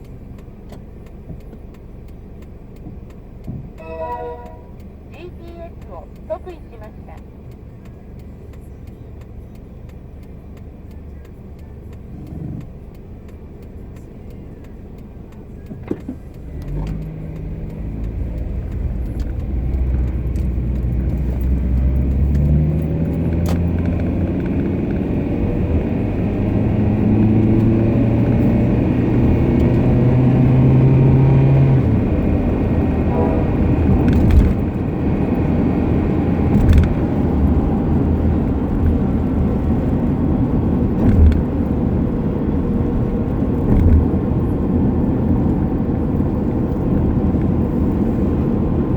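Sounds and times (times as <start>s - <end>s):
car road and drivetrain noise: 0.0s - 48.9s
whining tones: 3.7s - 5.3s, 18.8s - 41.8s.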